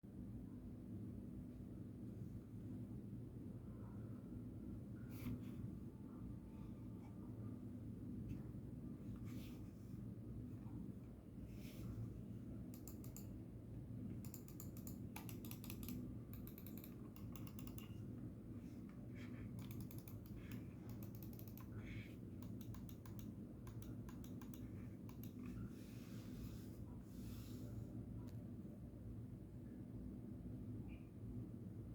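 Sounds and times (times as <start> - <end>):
mouse buttons clicking: 12.7 - 13.4, 14.2 - 18.2, 19.4 - 25.7.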